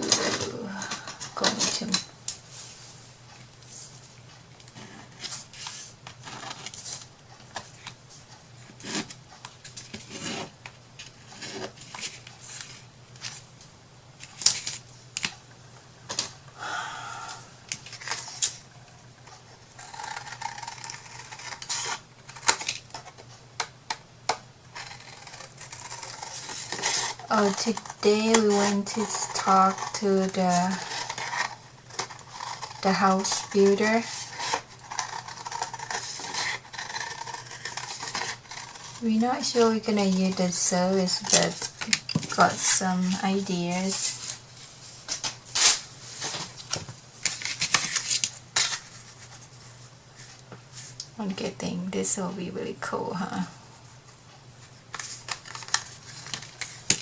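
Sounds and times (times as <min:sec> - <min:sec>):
steady low hum: 0:00.0 - 0:47.5
paper rustling: 0:54.7 - 0:57.0.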